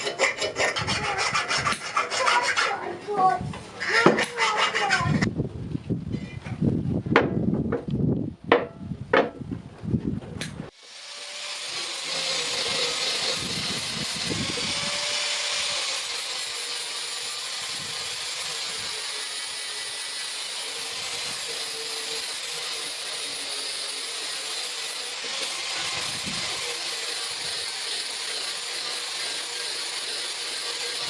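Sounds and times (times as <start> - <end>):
power tool running with high hiss: 10.7 - 31.0.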